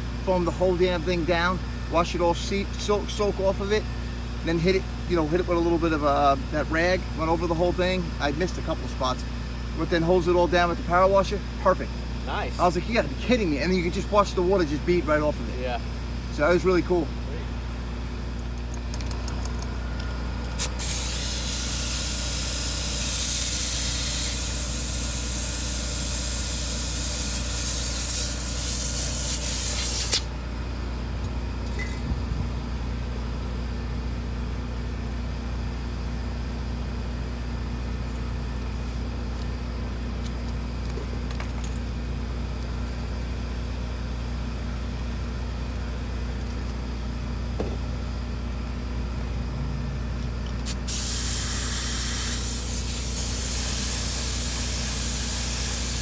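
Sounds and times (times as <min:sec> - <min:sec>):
spray nozzle hissing: 0:20.6 - 0:30.3, 0:50.7 - 0:56.0.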